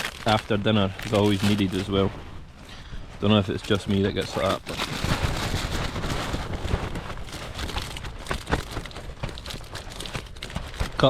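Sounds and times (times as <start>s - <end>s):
gusty wind buffeting: 0.0s - 11.0s
crackles and taps: 6.0s - 11.0s.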